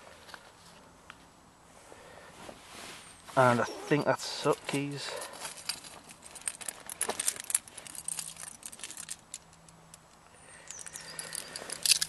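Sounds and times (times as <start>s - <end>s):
keys jangling: 5.1s - 9.7s, 10.6s - 12.0s.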